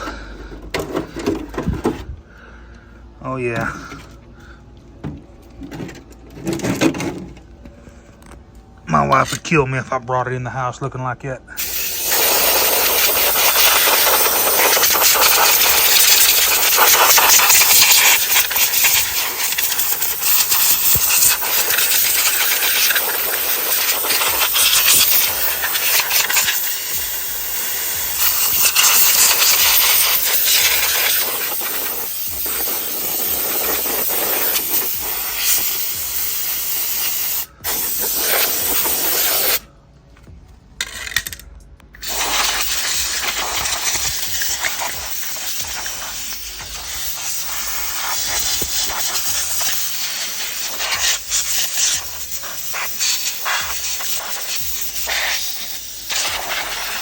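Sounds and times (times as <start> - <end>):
air blow gun hissing: 11.6 - 39.6, 42.0 - 57.0.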